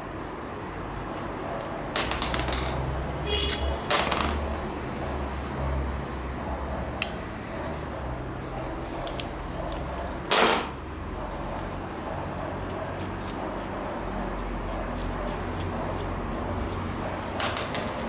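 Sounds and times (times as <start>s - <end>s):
metal pieces clinking: 2.0s - 4.4s, 8.4s - 10.8s.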